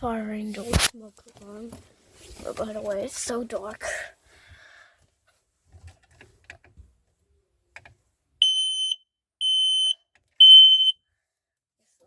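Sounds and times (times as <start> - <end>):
smoke alarm beeps: 8.4 - 11.0.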